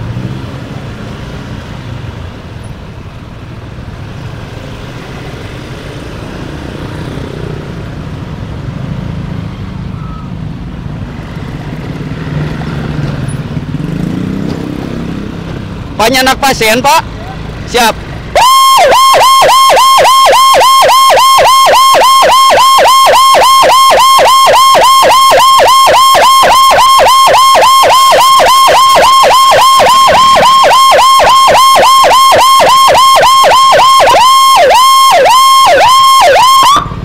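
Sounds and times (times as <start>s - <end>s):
siren yelping: 17.7s - 37.0s.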